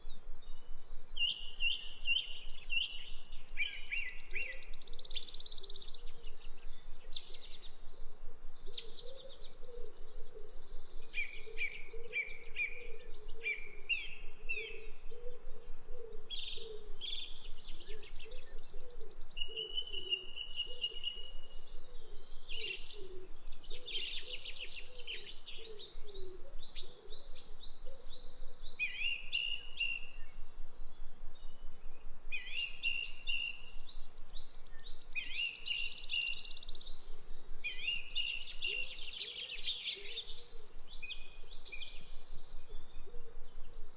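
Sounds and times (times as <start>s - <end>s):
small birds chirping and trilling: 16.1s - 43.9s.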